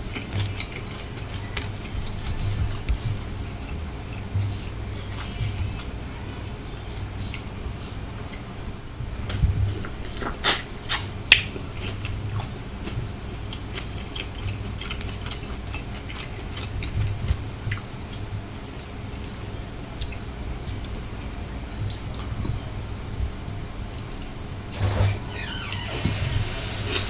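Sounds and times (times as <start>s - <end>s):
close chewing and biting: 0.0s - 7.5s, 9.7s - 21.1s.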